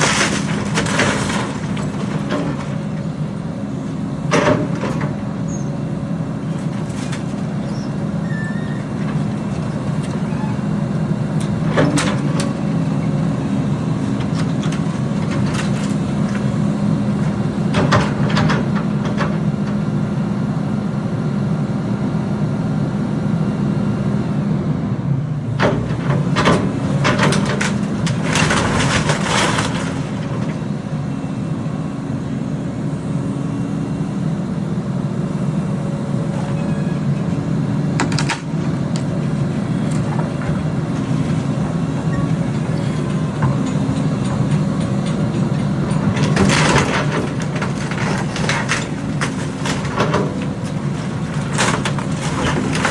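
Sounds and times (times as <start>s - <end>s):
diesel engine running: 0.0s - 52.9s
clatter and rushing noise: 25.6s - 30.4s, 43.0s - 52.9s.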